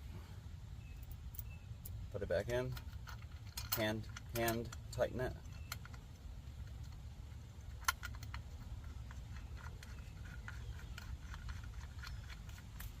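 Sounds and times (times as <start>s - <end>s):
metal clicks and taps: 2.5s - 7.0s, 7.6s - 13.0s.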